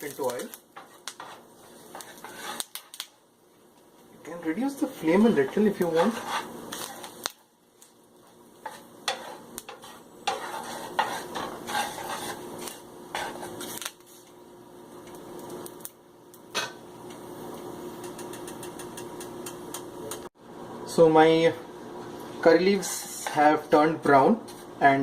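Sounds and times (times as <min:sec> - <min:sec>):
leaves frying in hot oil: 0:00.0 - 0:25.0
utensil scraping and knocking pan: 0:00.8 - 0:02.8, 0:05.3 - 0:07.1, 0:08.6 - 0:13.8.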